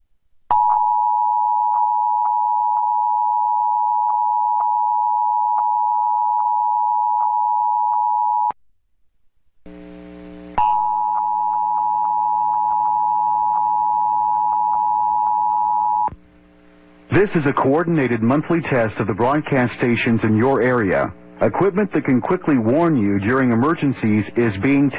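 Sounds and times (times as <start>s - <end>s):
low hum: 8.8s - 19.6s.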